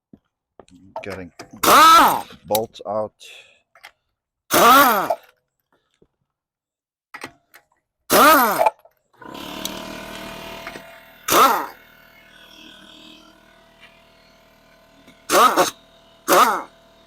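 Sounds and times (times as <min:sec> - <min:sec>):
pneumatic impact wrench whining: 0:01.4 - 0:02.6, 0:04.5 - 0:05.4, 0:08.1 - 0:17.0.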